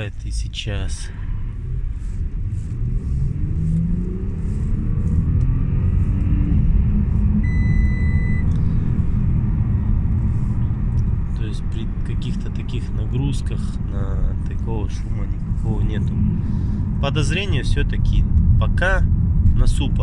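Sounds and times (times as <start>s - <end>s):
car road and engine rumble: 0.0s - 20.0s
short steady beep: 7.4s - 8.5s.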